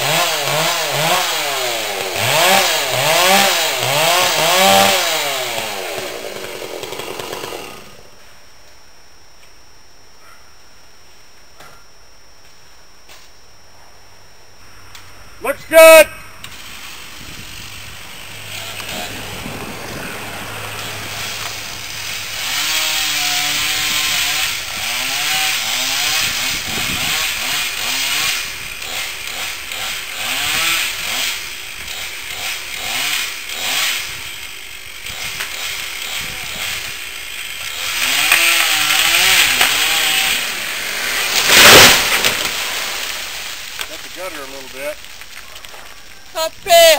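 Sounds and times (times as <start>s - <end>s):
chainsaw cutting wood: 0.0s - 8.2s, 15.8s - 46.0s
tree crashing down: 2.1s - 7.9s, 16.5s - 28.1s, 37.7s - 46.2s.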